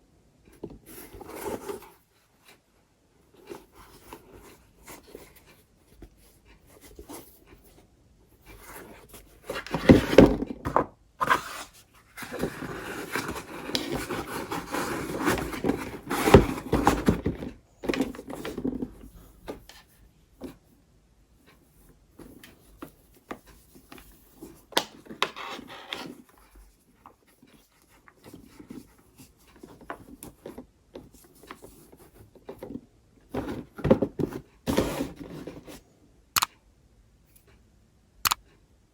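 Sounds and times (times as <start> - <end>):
rustling of packaging: 11.2 - 19.6.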